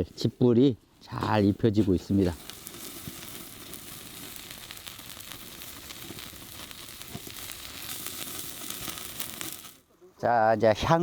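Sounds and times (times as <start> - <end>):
fire crackling: 0.0 - 9.9
meat sizzling on a grill: 1.0 - 9.8.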